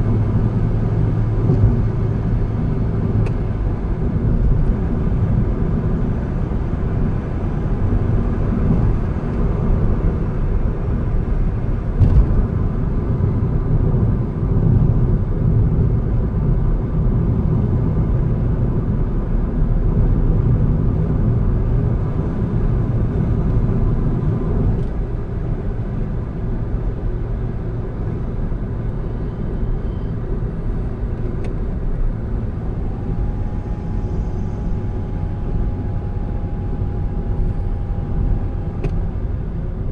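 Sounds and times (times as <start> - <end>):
car engine and tyres rumbling: 0.0 - 39.9
faint steady tone: 28.2 - 39.0.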